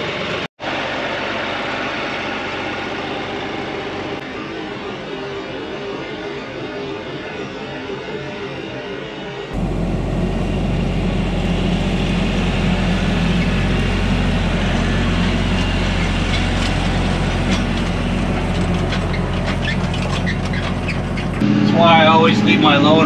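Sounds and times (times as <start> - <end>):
tractor diesel engine running: 9.6 - 21.4.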